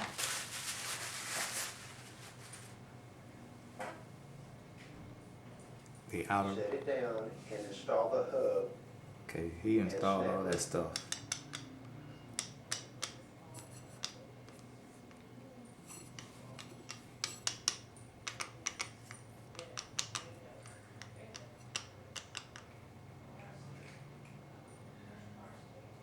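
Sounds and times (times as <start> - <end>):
hard objects clicking and tapping: 10.5 - 22.9.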